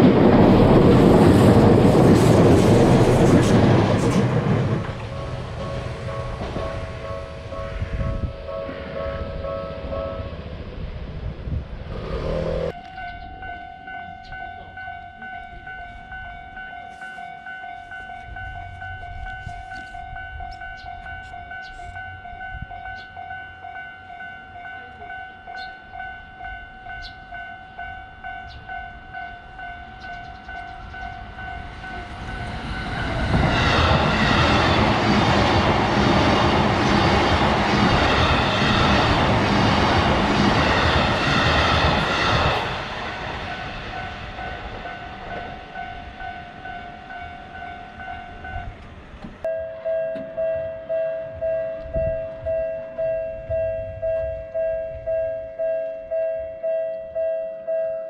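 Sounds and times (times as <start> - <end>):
railroad crossing bell ringing: 0.0 - 10.8, 12.7 - 58.0
train passing: 0.0 - 57.8
lower-pitched crossing bell: 12.7 - 34.2, 49.4 - 58.0.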